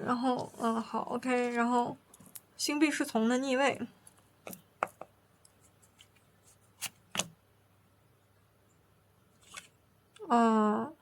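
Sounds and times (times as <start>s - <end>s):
cards clicking and snapping: 6.8s - 7.4s.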